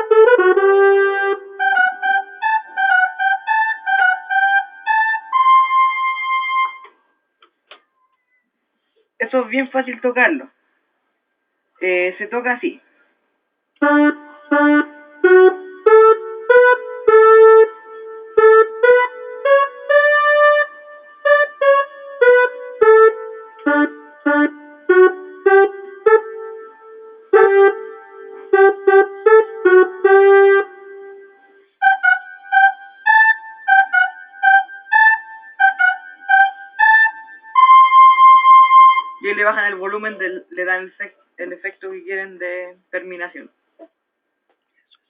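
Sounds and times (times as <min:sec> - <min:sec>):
keyboard brass voice melody: 0:00.0 - 0:06.9, 0:13.8 - 0:40.7.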